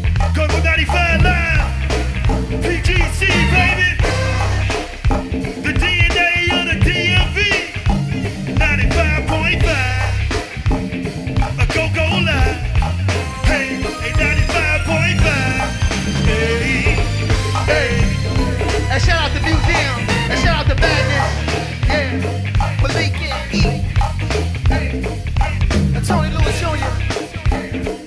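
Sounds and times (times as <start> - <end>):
drum kit and bass beat: 0.0 - 28.0
wavering high melody: 2.6 - 5.3, 13.1 - 22.0.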